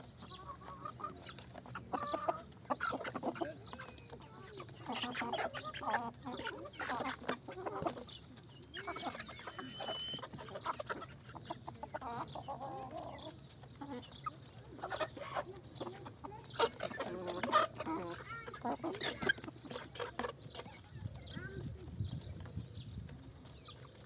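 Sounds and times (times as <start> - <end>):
chickens clucking: 0.0 - 24.0.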